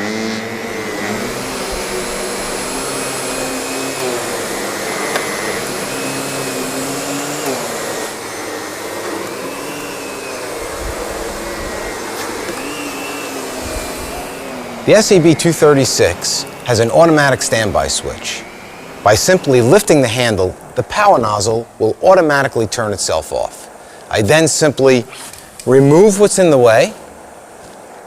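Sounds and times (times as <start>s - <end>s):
thin high whine: 0.0s - 28.0s
vacuum cleaner running: 0.0s - 28.0s.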